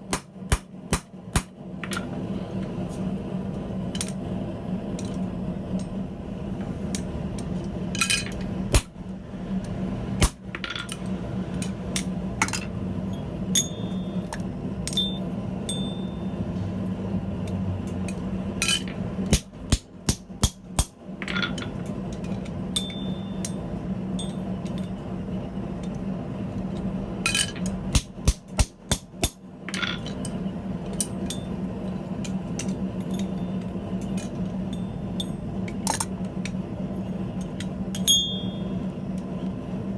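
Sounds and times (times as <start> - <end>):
hammer striking metal on anvil: 0.0 - 1.6, 22.7 - 23.6, 27.3 - 29.4, 38.0 - 38.8
steady low hum: 0.0 - 39.9.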